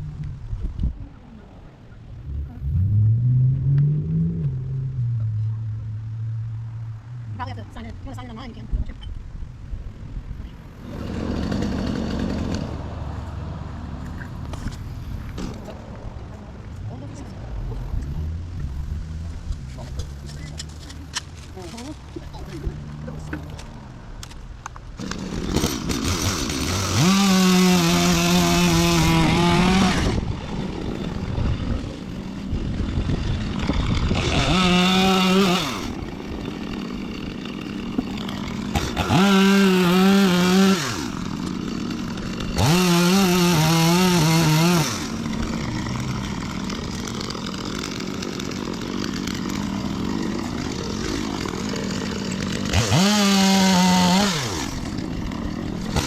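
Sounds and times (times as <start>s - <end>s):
chainsaw revving and cutting wood: 10.8s - 16.0s, 16.8s - 56.0s.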